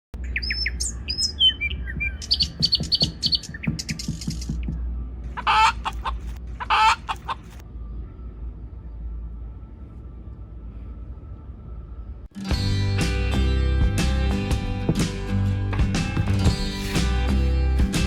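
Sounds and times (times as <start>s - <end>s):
small birds chirping: 0.2s - 4.8s
loud calls: 5.4s - 7.4s
chickens clucking: 5.4s - 7.6s.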